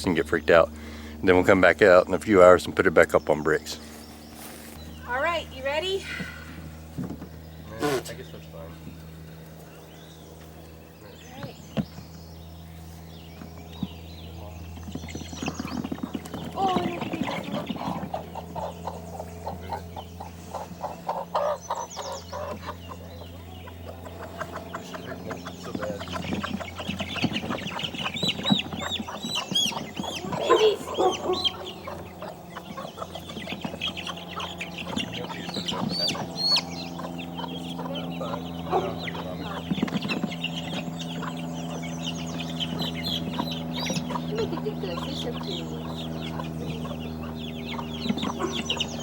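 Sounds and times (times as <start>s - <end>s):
chicks peeping: 0.0s - 49.0s
steady low hum: 0.0s - 49.0s
hen clucking: 13.3s - 49.0s.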